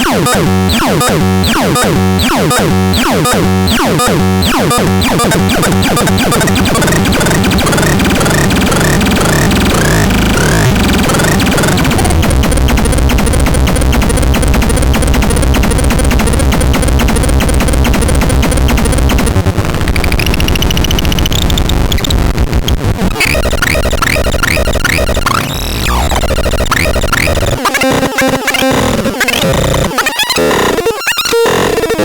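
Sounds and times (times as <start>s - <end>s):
fast electronic beat: 0.0s - 19.6s, 23.2s - 29.8s
short rising electronic chirps: 4.5s - 16.7s
rising synth sweeps: 5.0s - 12.4s.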